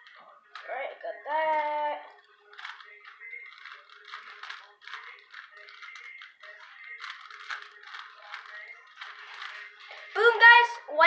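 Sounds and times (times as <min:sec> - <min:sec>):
puzzle cube plastic clicks: 0:02.5 - 0:09.7.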